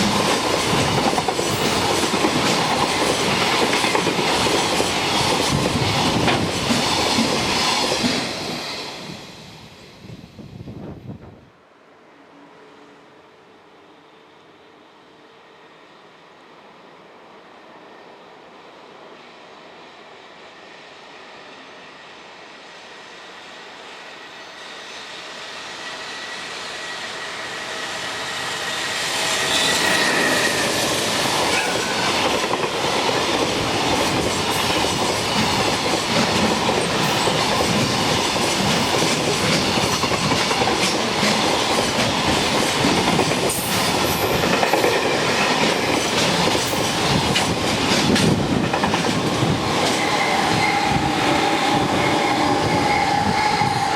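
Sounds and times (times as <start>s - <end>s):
train wheel clatter: 0.0s - 8.7s, 28.6s - 53.9s
freight train passing: 0.0s - 53.9s.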